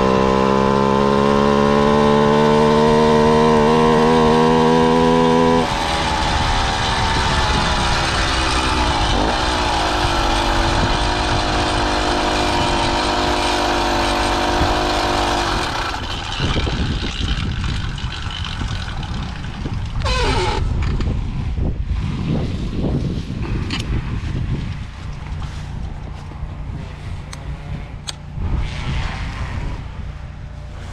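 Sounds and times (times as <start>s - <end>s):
two-stroke bicycle engine running: 0.0s - 21.4s
rough rushing wind and rolling: 0.0s - 30.9s.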